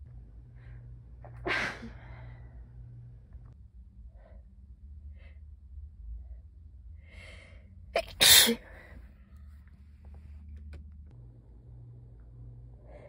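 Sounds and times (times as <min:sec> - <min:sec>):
loud sneeze: 0:08.0 - 0:08.6.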